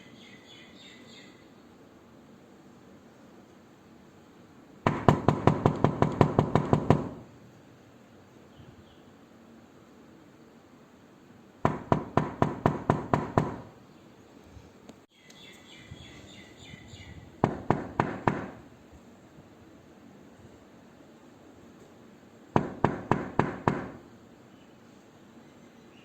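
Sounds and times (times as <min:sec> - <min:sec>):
knuckles knocking on a door: 0:04.9 - 0:07.3, 0:11.7 - 0:13.7, 0:17.4 - 0:18.6, 0:22.6 - 0:24.0.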